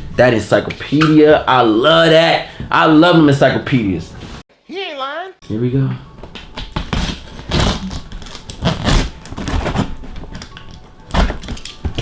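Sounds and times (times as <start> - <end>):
cardboard package rustling and scraping: 6.6 - 12.0.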